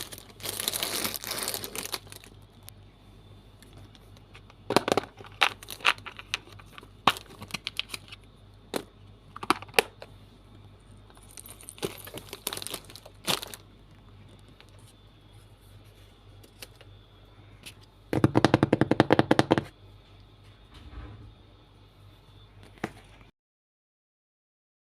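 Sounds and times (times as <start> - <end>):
packing materials clicking and tapping: 0.0 - 2.3, 3.7 - 10.1, 11.1 - 14.8, 18.1 - 19.7
plastic or paper crinkling: 0.0 - 2.7, 5.1 - 8.3, 11.1 - 15.0.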